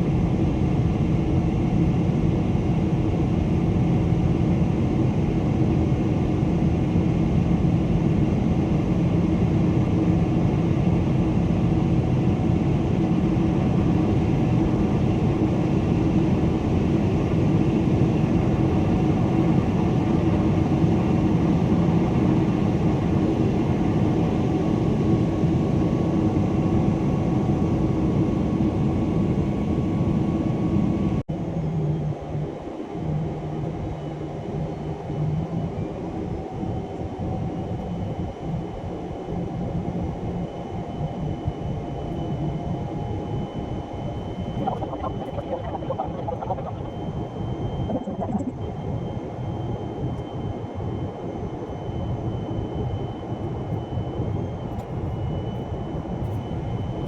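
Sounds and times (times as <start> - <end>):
jet engine and airflow drone: 0.0 - 57.0
constant low hum: 42.0 - 49.0.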